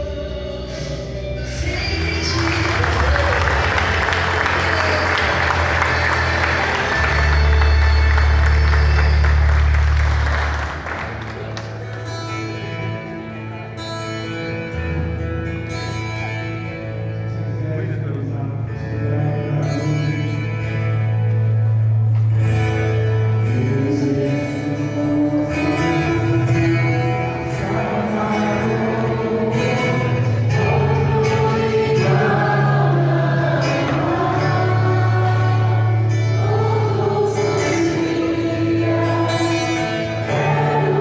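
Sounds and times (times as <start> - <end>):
long held bass notes: 0.0 - 41.0
voices singing a melody: 23.5 - 41.0
choir singing: 23.6 - 41.0.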